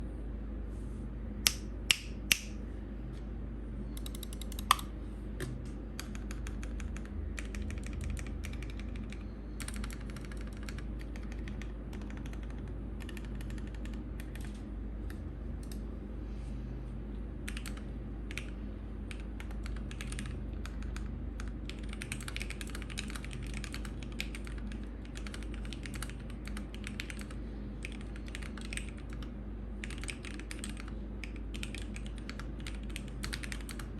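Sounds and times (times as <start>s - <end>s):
typing on mechanical keyboard: 4.0s - 4.8s, 6.0s - 14.6s, 17.5s - 18.5s, 19.1s - 33.9s.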